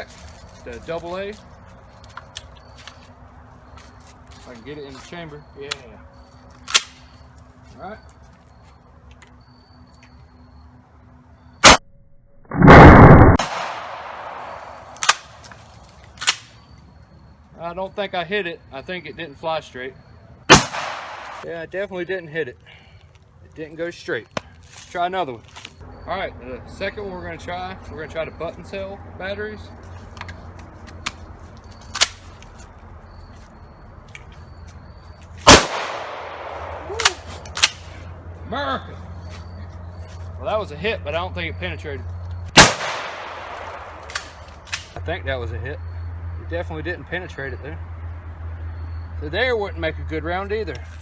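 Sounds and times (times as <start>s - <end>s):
sharp crack: 6.6s - 7.1s, 12.5s - 16.6s, 20.5s - 21.5s, 31.8s - 32.6s, 35.4s - 38.1s, 42.5s - 45.0s
shotgun blast: 12.5s - 15.2s, 20.5s - 21.4s, 35.4s - 37.8s, 42.6s - 44.4s
sharp clicks: 30.1s - 32.6s.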